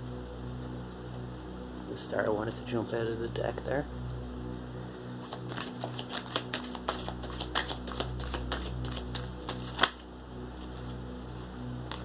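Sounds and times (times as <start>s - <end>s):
soft background music: 0.0s - 12.0s
cards being shuffled: 5.2s - 11.0s.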